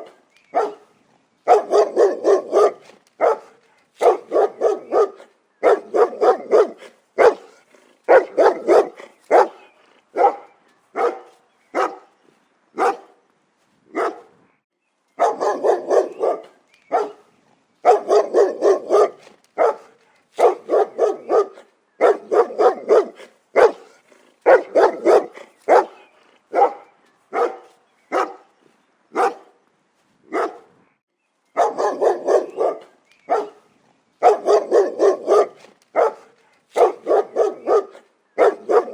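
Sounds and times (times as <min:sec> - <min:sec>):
dog barking: 0:00.0 - 0:12.1, 0:12.8 - 0:13.2, 0:13.9 - 0:14.4, 0:15.2 - 0:28.5, 0:29.1 - 0:29.6, 0:30.3 - 0:30.7, 0:31.6 - 0:38.9.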